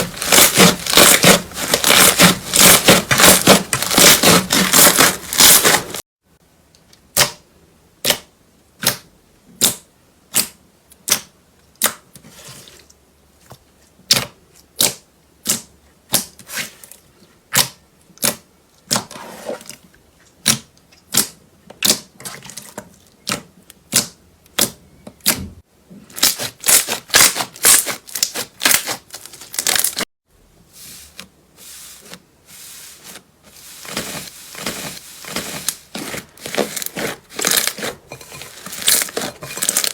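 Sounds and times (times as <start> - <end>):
slime squishing with clicking pops: 8.0 - 12.2, 14.1 - 16.4, 17.5 - 19.1, 20.3 - 22.2, 23.2 - 25.4.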